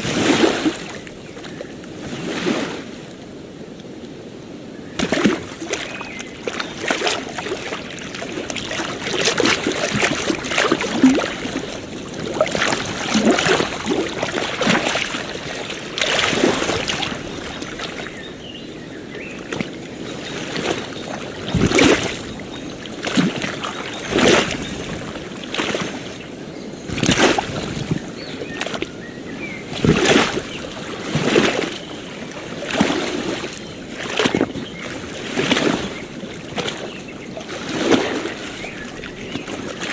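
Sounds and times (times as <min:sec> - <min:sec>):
small waves lapping: 0:00.0 - 0:39.9.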